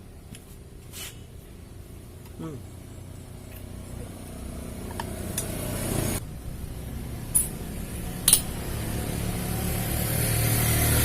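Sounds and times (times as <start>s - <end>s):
low motor hum: 0.0s - 11.0s
sharp metallic clinks: 7.3s - 8.6s.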